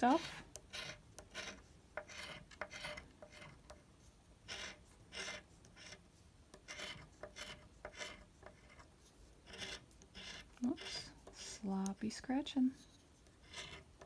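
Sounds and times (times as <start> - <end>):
scratch card rasping strokes: 0.0 - 14.0.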